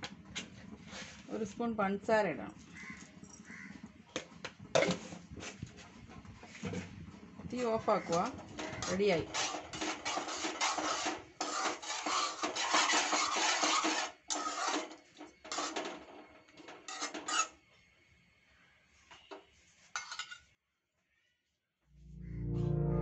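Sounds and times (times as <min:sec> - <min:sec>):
spoon scraping a cooking pan: 0:08.0 - 0:16.0, 0:16.8 - 0:17.6, 0:19.9 - 0:20.5.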